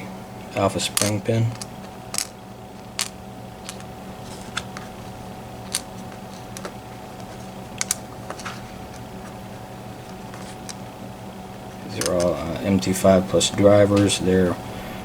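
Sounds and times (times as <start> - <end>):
steady low hum: 0.0 - 15.0
small metal clicks: 1.0 - 2.4.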